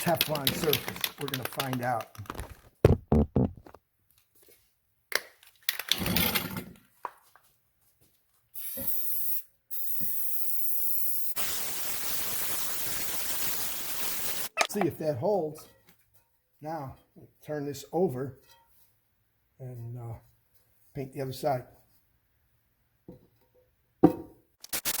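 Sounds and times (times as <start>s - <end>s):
handling noise: 0.1s - 3.8s
spray can hissing: 8.6s - 14.6s, 24.6s - 25.0s.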